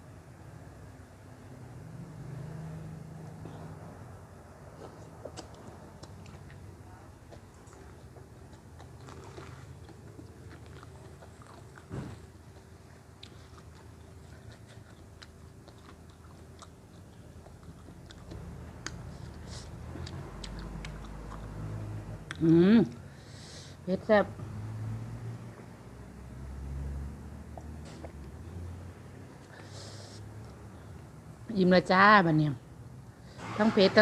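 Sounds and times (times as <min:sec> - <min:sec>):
person chewing crunchy vegetables: 0:04.7 - 0:22.5.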